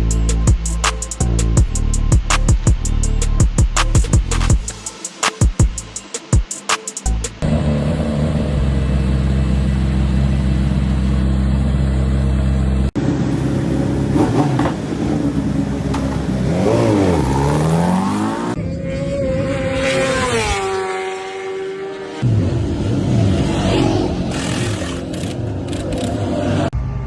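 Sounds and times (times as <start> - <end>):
motorbike engine steady: 7.4 - 17.1
motorbike engine revving: 7.4 - 26.8
motorbike passing by: 12.8 - 27.0.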